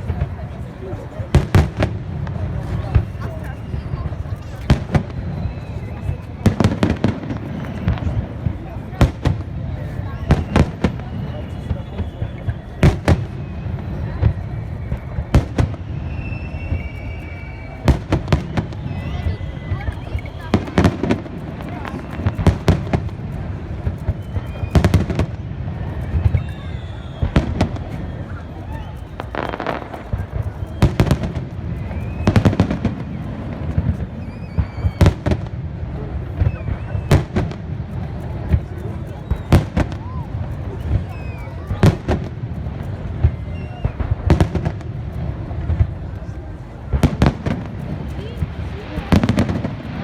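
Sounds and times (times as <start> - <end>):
fireworks bangs: 0.0 - 50.0
thin whistling tone: 2.7 - 8.4, 9.8 - 35.4, 36.1 - 42.2, 43.3 - 44.5.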